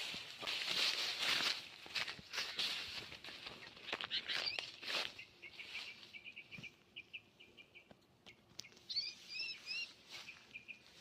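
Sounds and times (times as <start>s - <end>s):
songbirds chirping: 0.0s - 11.0s
whistled bird notes: 8.6s - 10.9s.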